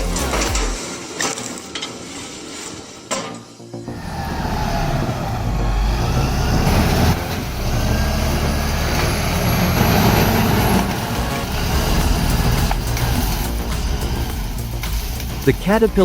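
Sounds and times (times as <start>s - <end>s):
diesel engine running under load: 3.9s - 16.0s.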